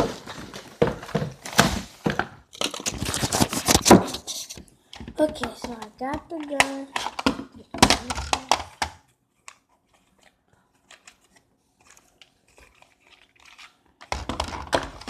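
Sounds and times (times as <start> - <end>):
packaging crinkling and tearing: 2.5 - 4.5, 9.4 - 15.0.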